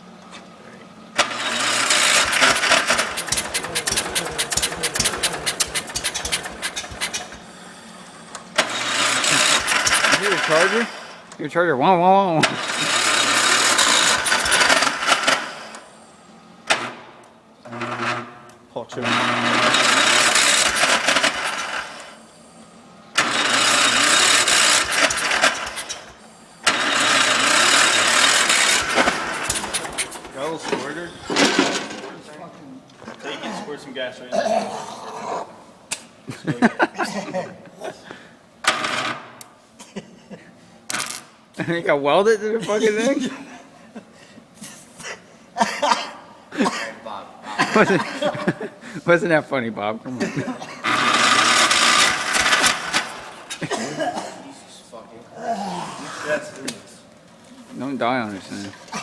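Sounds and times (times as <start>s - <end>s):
engine starter cranking: 1.2s - 11.3s, 12.4s - 15.9s, 19.0s - 22.2s, 23.1s - 32.1s, 50.8s - 53.7s.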